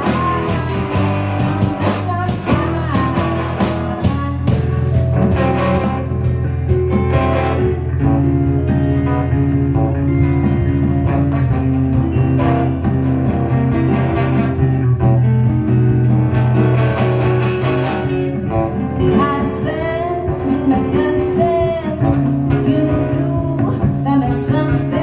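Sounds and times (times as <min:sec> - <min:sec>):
person singing: 0:00.0 - 0:05.1, 0:19.0 - 0:25.0
live rock band playing: 0:00.0 - 0:25.0.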